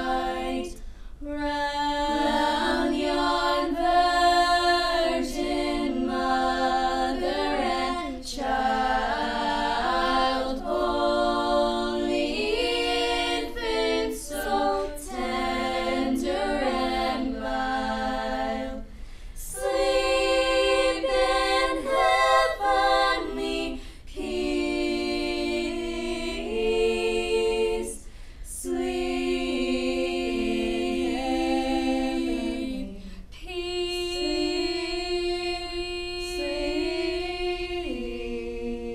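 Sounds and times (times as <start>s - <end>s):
choir singing a cappella: 0.0s - 38.9s
singers breathing: 0.8s - 1.2s, 18.8s - 19.4s, 23.8s - 24.1s, 28.0s - 28.5s.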